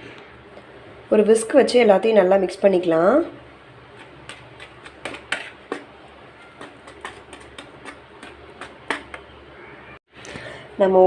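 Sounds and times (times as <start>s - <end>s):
whisk stirring flour: 3.8s - 9.3s
whisk wires tapping bowl: 3.8s - 9.4s.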